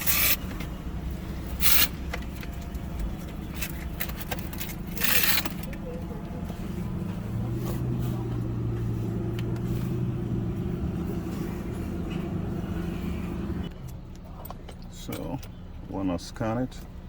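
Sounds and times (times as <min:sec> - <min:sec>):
vehicle mechanical hum: 0:00.0 - 0:17.0.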